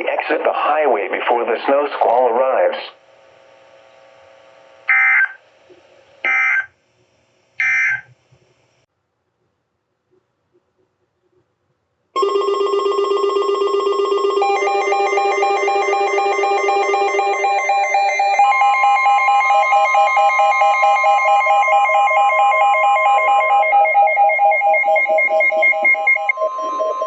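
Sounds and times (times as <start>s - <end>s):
phones sounding emergency alert tones: 6.3s - 6.7s, 7.6s - 8.1s, 12.2s - 27.0s.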